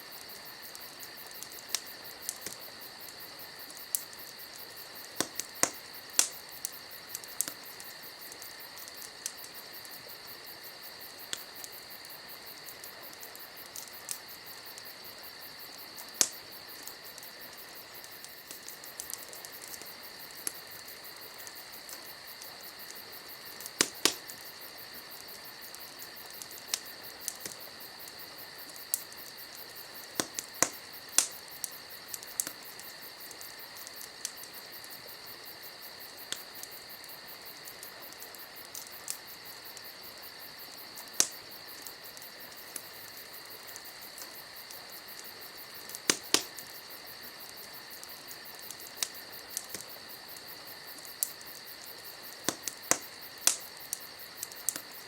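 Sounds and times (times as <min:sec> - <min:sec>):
campfire crackling: 0:00.0 - 0:55.0
burning wood popping: 0:00.1 - 0:35.0, 0:36.0 - 0:55.0.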